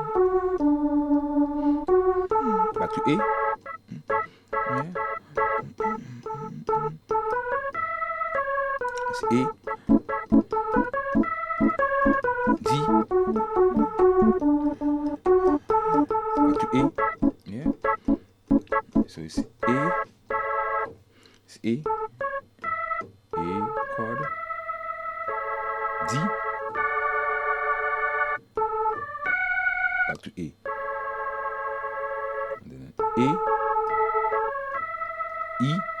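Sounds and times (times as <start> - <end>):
organ keyboard reggae chords: 0.0 - 36.0.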